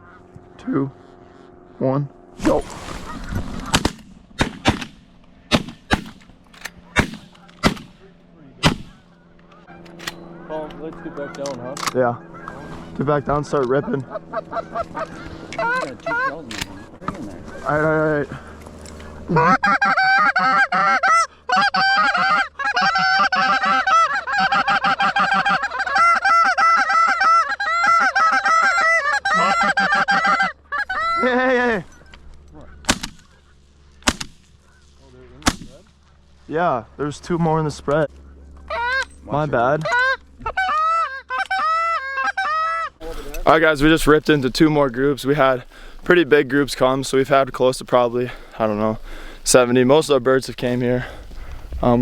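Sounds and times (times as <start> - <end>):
goose call honks: 0.0 - 3.9, 8.6 - 18.3, 19.0 - 33.6, 38.6 - 49.4
shotgun blasts with echo: 3.6 - 9.1, 35.4 - 35.8.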